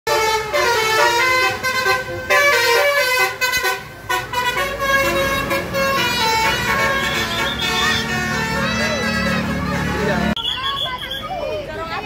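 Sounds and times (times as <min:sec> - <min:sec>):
musical bus air horn melody: 0:00.1 - 0:10.4.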